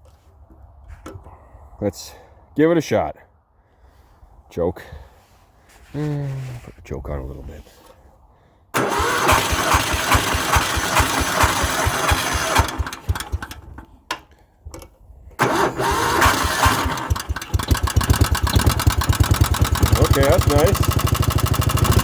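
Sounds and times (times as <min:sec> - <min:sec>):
engine starting and stuttering: 0:08.8 - 0:14.3, 0:15.3 - 0:22.0.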